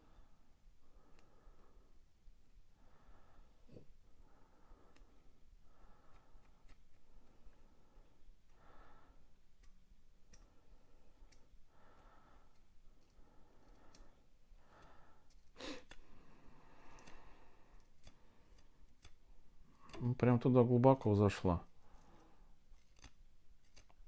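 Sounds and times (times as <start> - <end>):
soft breaths: 0.0 - 24.0
faint clicks of hands and tool: 6.0 - 7.7, 9.5 - 11.5, 12.3 - 20.2.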